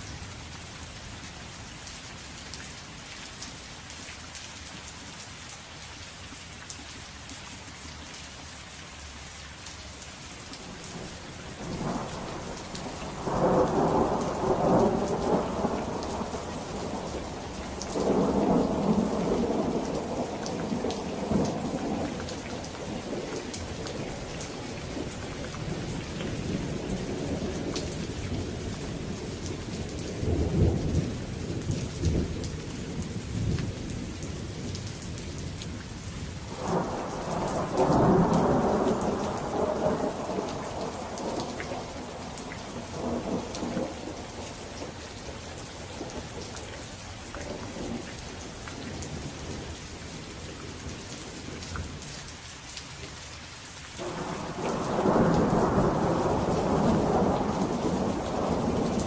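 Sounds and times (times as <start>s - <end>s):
steady rain falling: 0.0s - 59.0s
rolling thunder: 11.0s - 23.2s, 36.5s - 45.3s, 54.0s - 59.0s.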